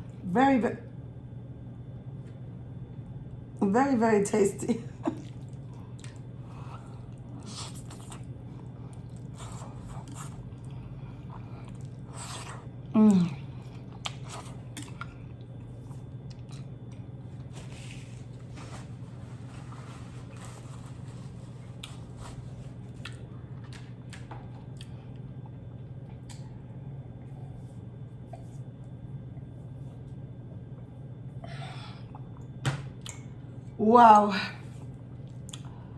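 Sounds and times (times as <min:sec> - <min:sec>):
steady low hum: 0:00.0 - 0:35.9
chewing noodles: 0:05.1 - 0:18.2, 0:19.1 - 0:23.8
wet mouth clicks and smacks: 0:33.0 - 0:33.2.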